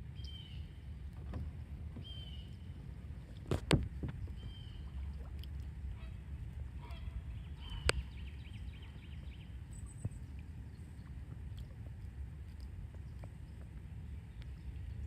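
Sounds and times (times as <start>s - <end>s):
low steady rumble: 0.0s - 15.0s
bird calls: 2.0s - 2.8s, 4.1s - 5.2s, 5.9s - 11.1s.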